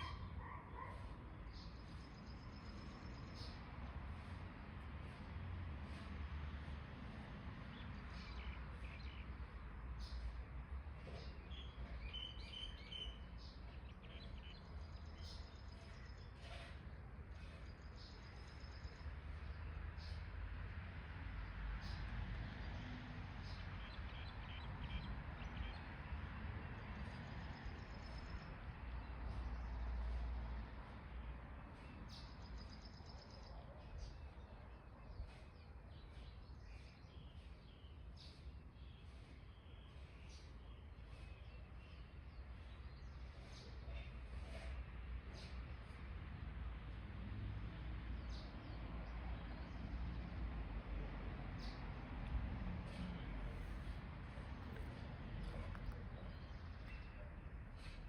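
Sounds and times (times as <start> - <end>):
songbirds chirping: 0.0 - 58.0
birds chirping: 7.7 - 20.2, 52.8 - 58.0.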